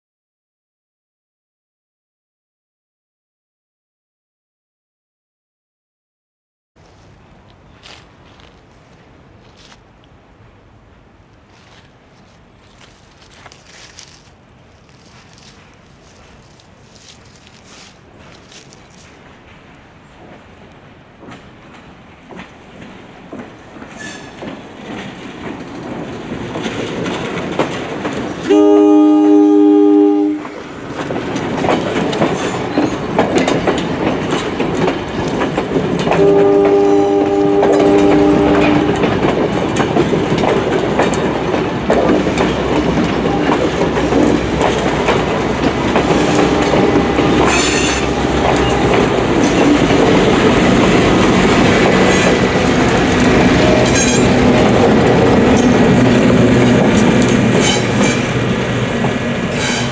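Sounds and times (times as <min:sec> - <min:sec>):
train rumbling past: 0:06.8 - 0:59.9
wheels clacking over rail joints: 0:11.2 - 0:29.0, 0:30.0 - 0:59.9
two-tone air horn blasts: 0:28.5 - 0:30.6, 0:36.1 - 0:39.1, 0:46.0 - 0:49.9
wheels squealing: 0:30.8 - 0:37.0, 0:37.7 - 0:58.5, 0:59.4 - 0:59.9.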